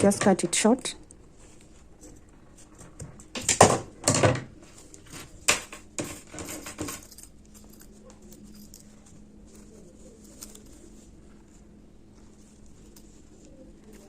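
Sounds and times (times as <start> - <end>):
zipper being handled: 6.4 - 14.0.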